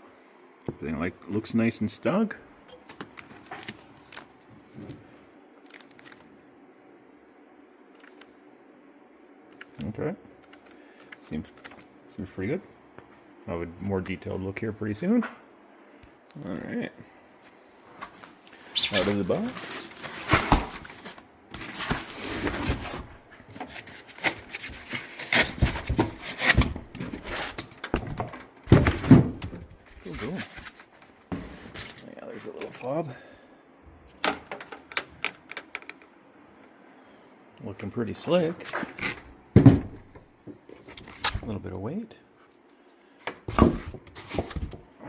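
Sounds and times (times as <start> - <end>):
packaging crinkling: 5.6 - 6.3
cardboard rubbing and scraping: 19.0 - 27.7.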